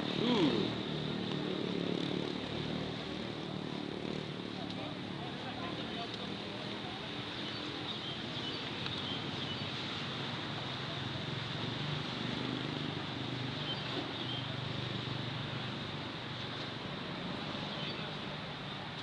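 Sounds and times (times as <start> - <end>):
vehicle engine hum: 0.0 - 2.2
steady vehicle engine hum: 0.0 - 7.9.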